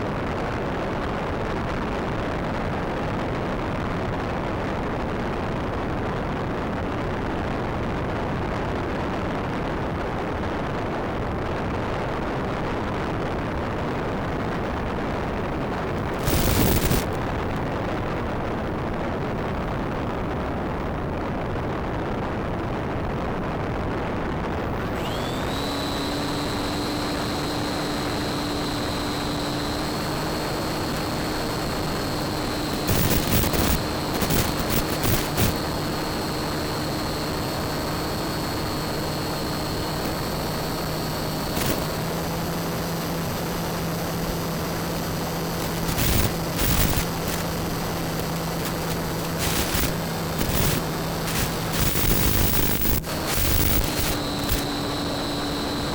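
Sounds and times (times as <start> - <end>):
steady two-tone whine: 14.2 - 18.0, 24.4 - 55.9
steady rushing noise: 16.0 - 17.2, 24.6 - 55.9
loud crackle: 16.1 - 17.2, 24.6 - 55.9.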